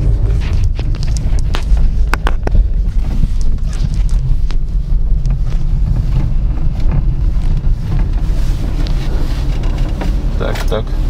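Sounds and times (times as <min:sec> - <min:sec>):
car cabin low rumble: 0:00.0 - 0:11.0.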